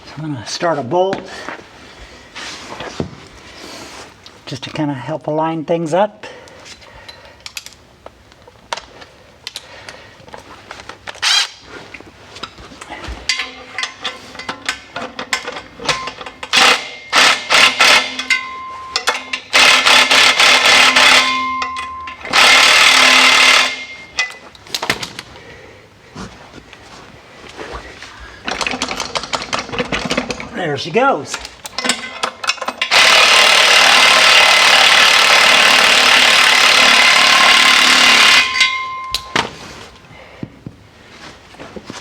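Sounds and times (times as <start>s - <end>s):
power tool whirring: 11.2s - 11.6s, 16.4s - 21.5s, 22.1s - 24.0s, 32.8s - 38.7s.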